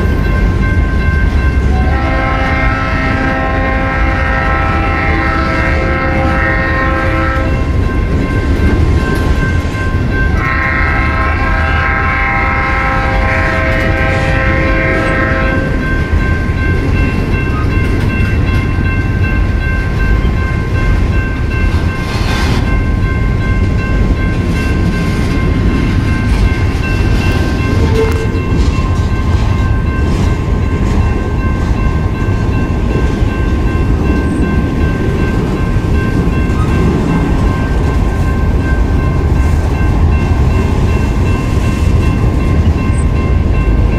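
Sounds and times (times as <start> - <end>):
rumble of passing train: 0.0 - 43.9
train horn blasts: 1.7 - 7.6, 10.4 - 15.9, 27.6 - 28.5.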